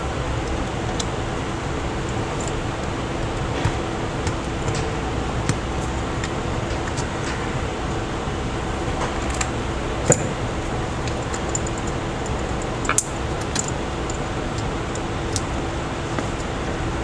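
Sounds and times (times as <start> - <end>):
fan-like hum: 0.0 - 17.0
tools clicking and tapping: 3.3 - 7.4, 10.1 - 15.5.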